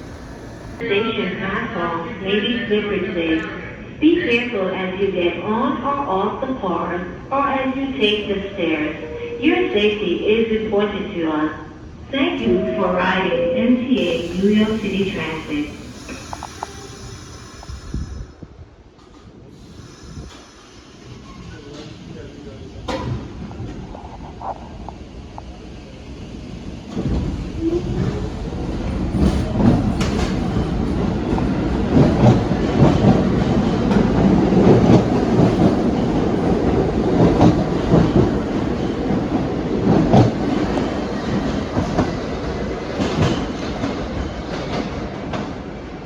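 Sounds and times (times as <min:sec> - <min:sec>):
wheels clattering over rail joints: 0:00.0 - 0:00.8
subway train rumbling: 0:00.0 - 0:46.0.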